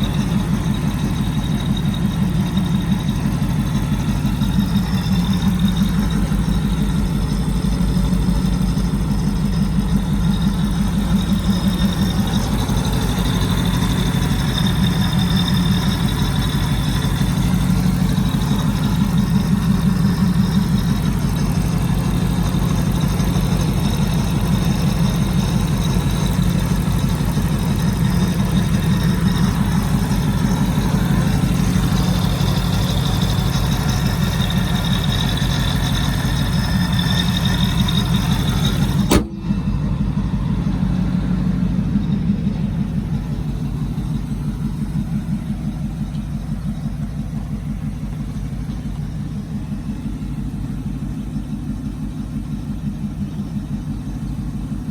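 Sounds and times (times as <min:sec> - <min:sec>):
engine idling: 0:00.0 - 0:54.9
sharp click: 0:39.0 - 0:39.5.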